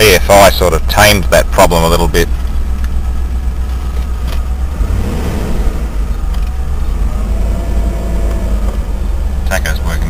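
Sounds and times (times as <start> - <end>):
car engine idling: 0.0 - 10.0.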